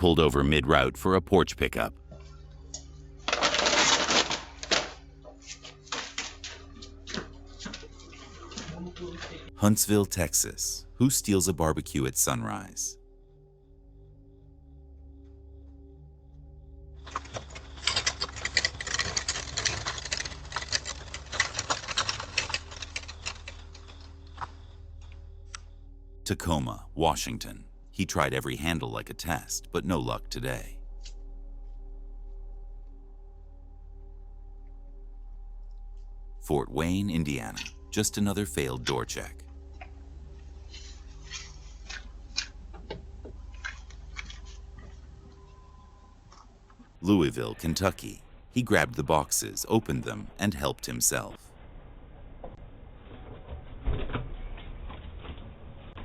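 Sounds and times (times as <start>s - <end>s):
low electrical hum: 0.0s - 56.0s
metal grill rattling: 17.1s - 24.5s.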